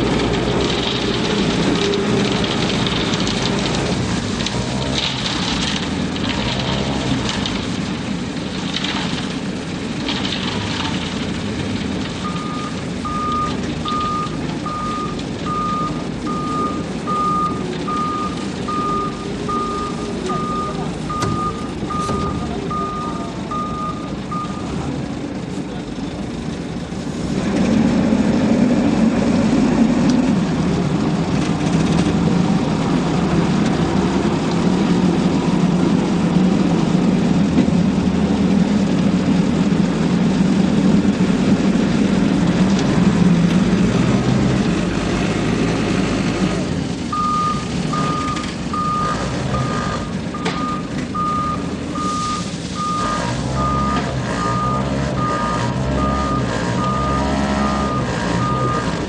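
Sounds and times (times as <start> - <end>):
truck engine running loudly: 0.0 - 59.0
reversing alarm beeping: 12.2 - 24.8, 47.1 - 58.9.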